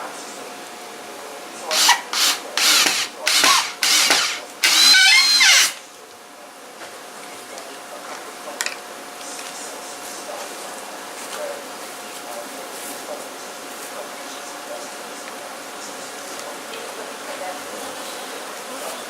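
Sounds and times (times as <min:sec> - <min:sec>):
tools grinding fasteners: 0:01.7 - 0:05.8
wavering squeal: 0:03.4 - 0:05.8.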